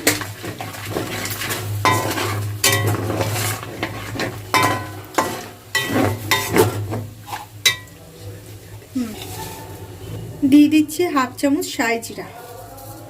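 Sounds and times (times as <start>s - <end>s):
spoon scraping and clanking pan: 0.0s - 8.0s
light sizzle of oil: 0.0s - 9.8s.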